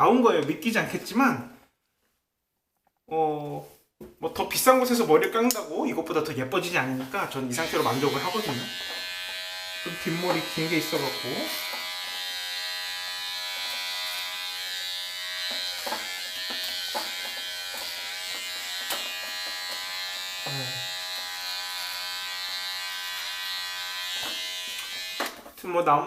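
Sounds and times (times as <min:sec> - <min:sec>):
electric hair clipper buzzing: 0:07.6 - 0:25.4.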